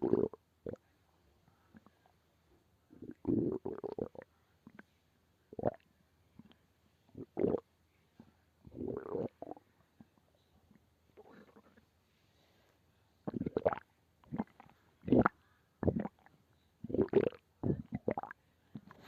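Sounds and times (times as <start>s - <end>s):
stomach growling and gurgling: 0.0s - 0.8s, 2.9s - 4.9s, 5.5s - 5.8s, 6.4s - 7.6s, 8.6s - 10.1s, 11.2s - 11.8s, 13.3s - 19.0s.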